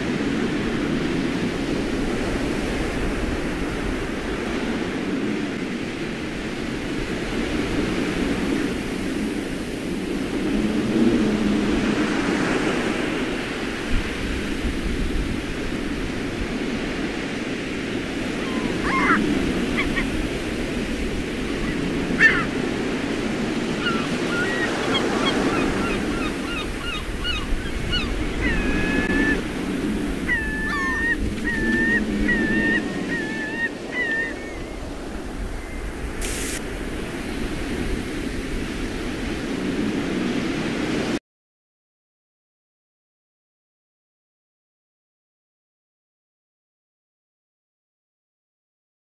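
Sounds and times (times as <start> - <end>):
wind: 0.0 - 41.2
birds calling: 18.2 - 36.6.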